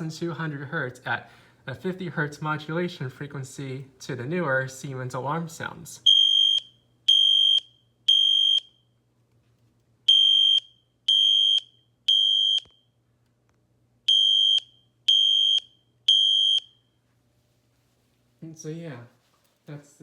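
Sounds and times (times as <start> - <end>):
fire alarm horn buzzing: 6.1 - 8.8, 10.1 - 12.9, 14.1 - 16.8.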